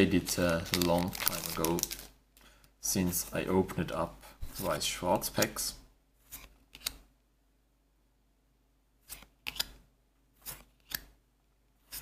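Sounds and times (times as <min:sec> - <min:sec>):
trading cards snapping and flicking: 0:09.1 - 0:09.8, 0:10.5 - 0:11.1.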